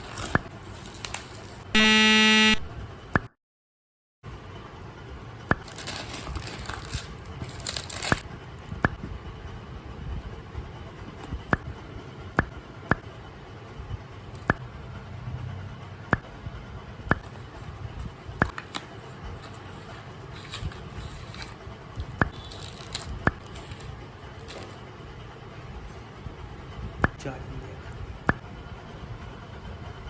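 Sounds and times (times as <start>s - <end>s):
handling and rustling noise: 5.6s - 8.2s, 18.5s - 21.6s, 22.3s - 24.8s.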